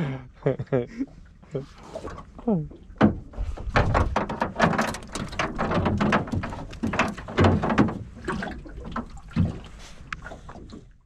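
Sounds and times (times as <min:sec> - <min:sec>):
wet slaps and splashes in boat: 0:01.8 - 0:11.0
wind on microphone: 0:03.2 - 0:07.6.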